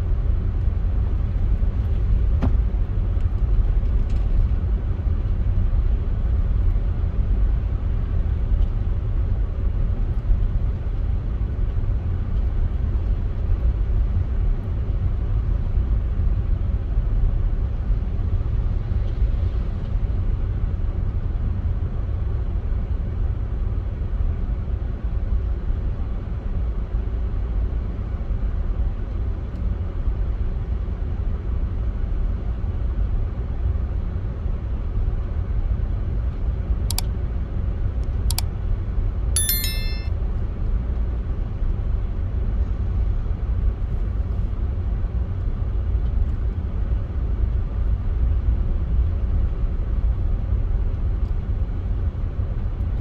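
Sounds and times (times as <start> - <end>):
brief high-pitched chirp: 39.4 - 40.1.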